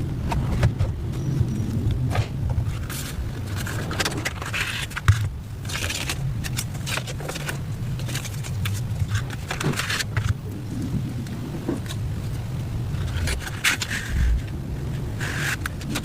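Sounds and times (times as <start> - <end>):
steady low hum: 0.0 - 16.0
packaging rustling and scraping: 0.2 - 10.4, 11.6 - 16.0.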